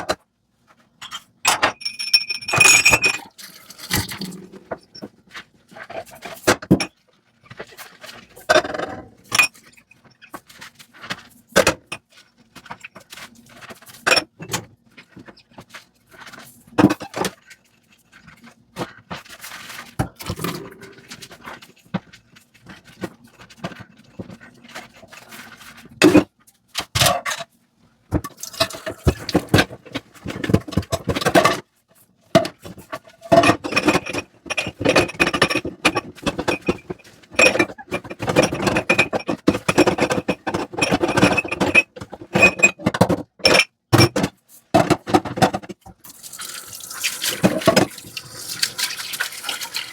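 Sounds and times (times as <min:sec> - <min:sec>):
dishes clinking while washed: 0:01.0 - 0:07.0, 0:08.0 - 0:10.6, 0:11.5 - 0:17.5, 0:28.1 - 0:31.6, 0:32.3 - 0:49.9.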